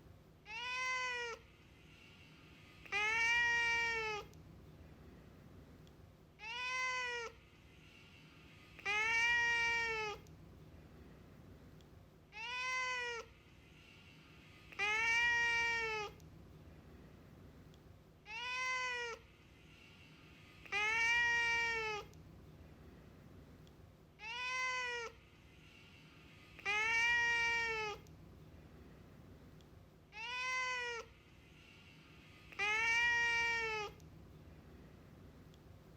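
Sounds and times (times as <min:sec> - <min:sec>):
cat meowing: 0:00.5 - 0:01.5, 0:02.8 - 0:04.4, 0:06.4 - 0:07.4, 0:08.8 - 0:10.3, 0:12.3 - 0:13.3, 0:14.7 - 0:16.2, 0:18.3 - 0:19.3, 0:20.6 - 0:22.2, 0:24.2 - 0:25.2, 0:26.6 - 0:28.1, 0:30.1 - 0:31.1, 0:32.5 - 0:34.0.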